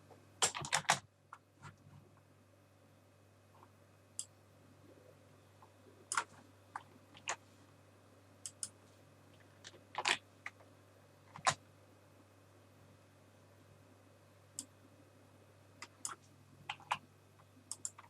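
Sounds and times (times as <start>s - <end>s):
faint low hum: 0.0s - 18.0s
mouse and keyboard clicks: 6.1s - 7.4s, 8.4s - 8.8s, 15.8s - 17.0s, 17.7s - 18.0s.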